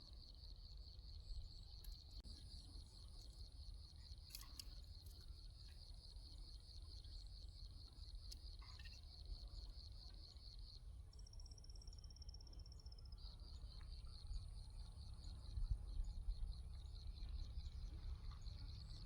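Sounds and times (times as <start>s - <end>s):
insect chirring: 1.5s - 12.4s.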